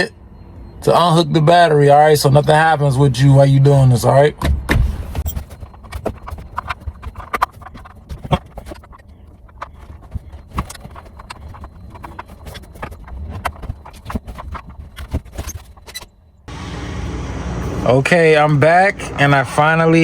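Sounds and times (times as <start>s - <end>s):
handling noise: 4.4s - 18.7s.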